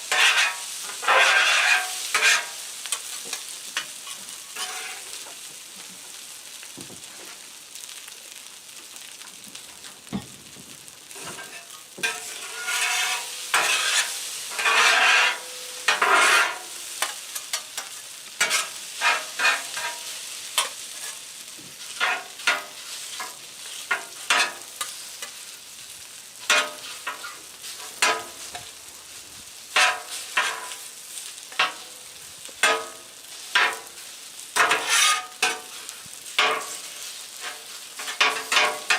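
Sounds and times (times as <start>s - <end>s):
food sizzling on a griddle: 0.0s - 38.9s
metal spatulas scraping: 0.1s - 3.4s, 4.1s - 5.1s, 11.2s - 21.2s, 21.9s - 25.4s, 34.6s - 35.8s, 36.4s - 38.9s.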